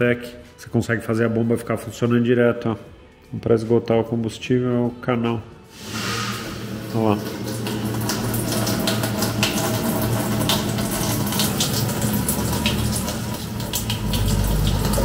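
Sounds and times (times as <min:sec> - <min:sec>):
fuel streaming and splashing: 0:05.7 - 0:15.0
electric fuel pump humming: 0:05.8 - 0:15.0.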